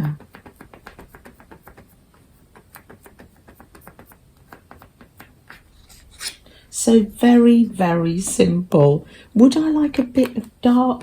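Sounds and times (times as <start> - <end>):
painting tool tapping on paper: 0.0 - 5.7.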